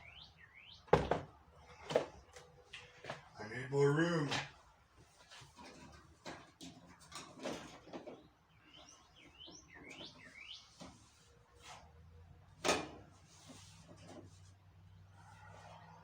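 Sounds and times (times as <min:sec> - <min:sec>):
tools and metal panels clicking: 0:05.5 - 0:08.4.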